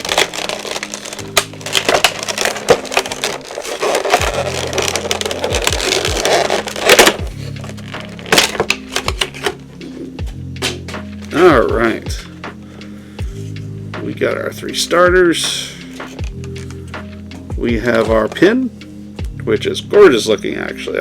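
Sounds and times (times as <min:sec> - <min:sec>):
plastic wrap tearing and crinkling: 0:00.0 - 0:09.6
background music with low notes: 0:00.0 - 0:21.0.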